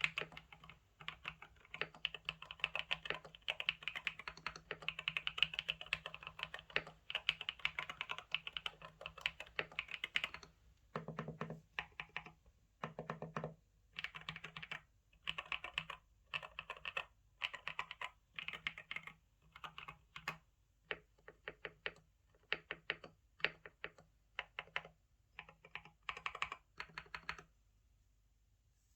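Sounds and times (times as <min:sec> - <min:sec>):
mechanical keyboard typing: 0:00.0 - 0:27.5.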